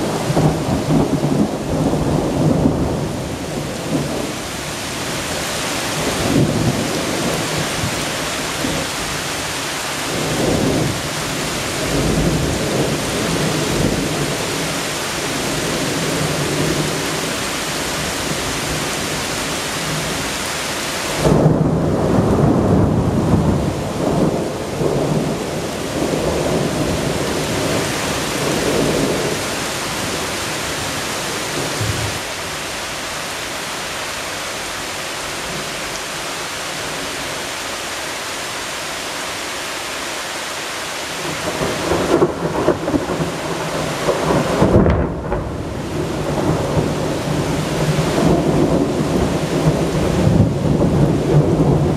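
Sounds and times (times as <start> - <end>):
thunder rumbling: 0.0 - 8.9, 10.0 - 17.4, 21.1 - 32.3, 41.2 - 51.9
heavy rain: 0.0 - 51.9.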